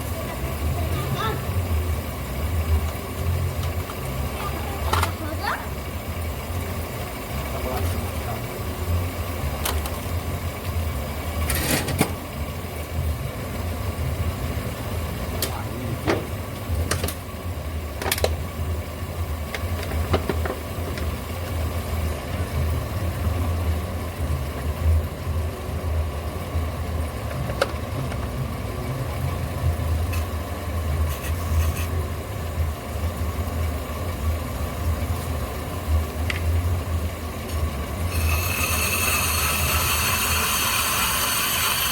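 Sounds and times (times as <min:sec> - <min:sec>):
car engine running: 0:00.0 - 0:38.5
stone scraping spinning brake disc: 0:11.4 - 0:12.2, 0:31.0 - 0:32.0, 0:38.0 - 0:41.9.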